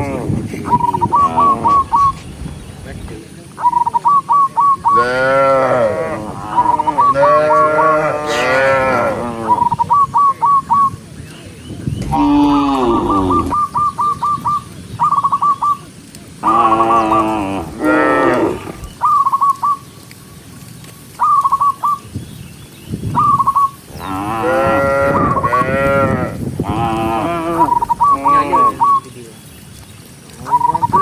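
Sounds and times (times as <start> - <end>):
cattle mooing: 5.0 - 9.6, 12.0 - 13.6, 16.4 - 18.9, 24.0 - 28.8.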